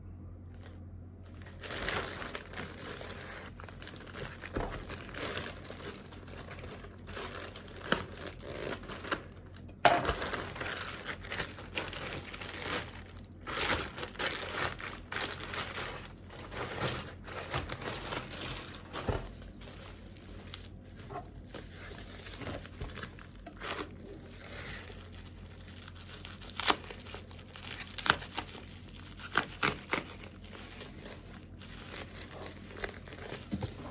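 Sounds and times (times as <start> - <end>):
packaging crinkling and tearing: 0.5 - 33.9.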